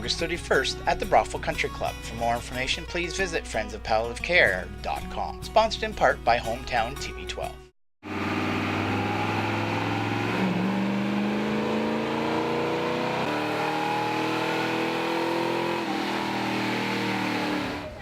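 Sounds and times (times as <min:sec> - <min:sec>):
car engine running under load: 0:08.1 - 0:18.0.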